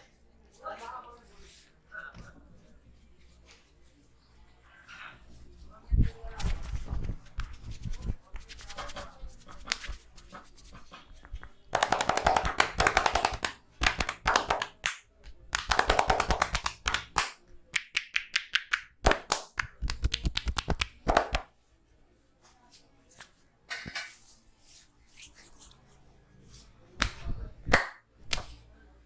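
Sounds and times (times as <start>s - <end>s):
hands slapping and tapping skin: 6.4s - 21.5s, 27.0s - 28.6s.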